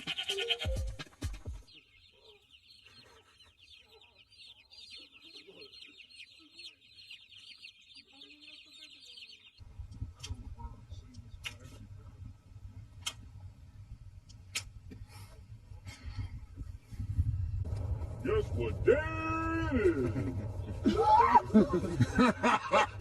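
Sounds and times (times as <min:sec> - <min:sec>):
chickens clucking: 0:00.0 - 0:09.6
chicks peeping: 0:01.6 - 0:09.6
low hum: 0:09.6 - 0:23.0
low thumps: 0:16.4 - 0:23.0.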